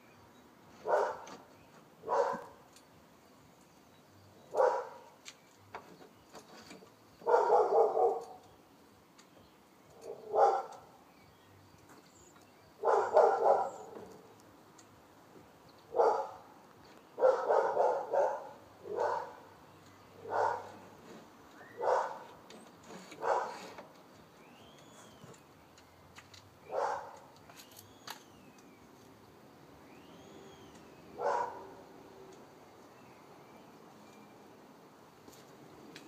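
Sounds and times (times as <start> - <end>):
dog barking: 0.8 - 1.3, 2.0 - 2.6, 4.5 - 5.1, 7.2 - 8.4, 10.1 - 10.8, 12.8 - 14.0, 15.9 - 16.5, 17.2 - 19.5, 20.2 - 20.8, 21.8 - 22.3, 23.2 - 23.6, 26.7 - 27.2, 31.2 - 31.8.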